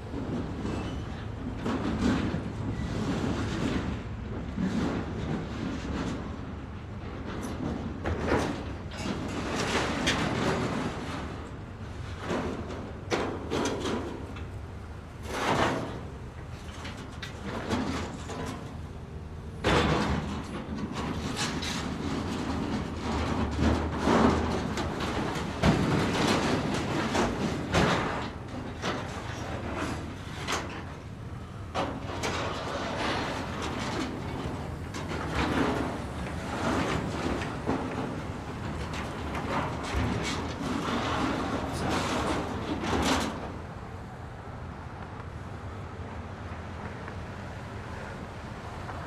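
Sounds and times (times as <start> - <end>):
knocks and metallic clanks: 19.6 - 43.5.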